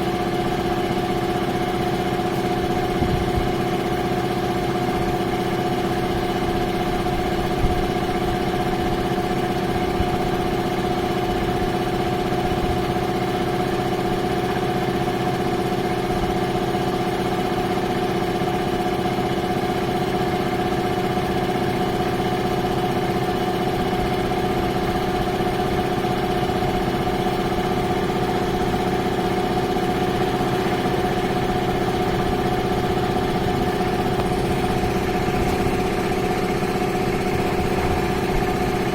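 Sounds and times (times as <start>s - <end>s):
air compressor running: 0.0s - 38.9s.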